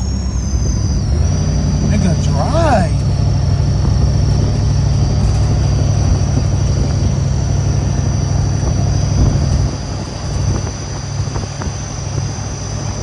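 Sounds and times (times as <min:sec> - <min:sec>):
vehicle rumbling: 0:00.0 - 0:13.0.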